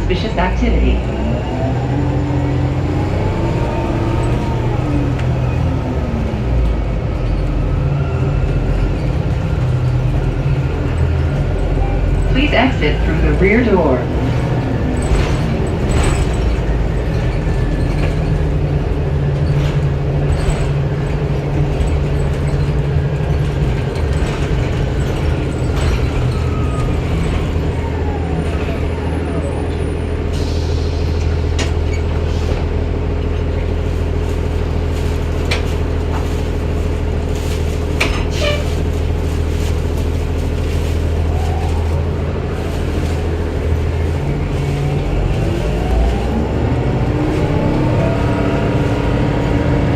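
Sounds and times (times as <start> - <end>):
bus diesel engine running: 0.0 - 49.9.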